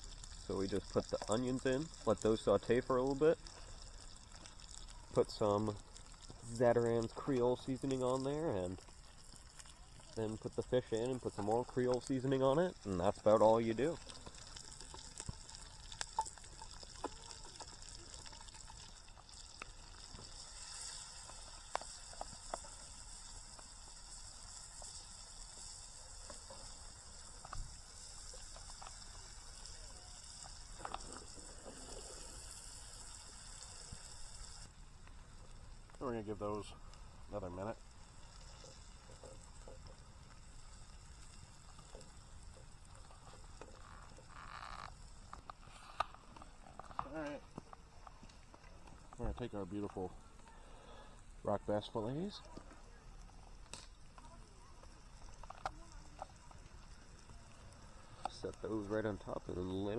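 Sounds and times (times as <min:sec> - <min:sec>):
butter and onions sizzling: 0:00.0 - 0:59.9
small pops: 0:13.4 - 0:36.0, 0:37.8 - 0:51.3, 0:52.4 - 0:58.6.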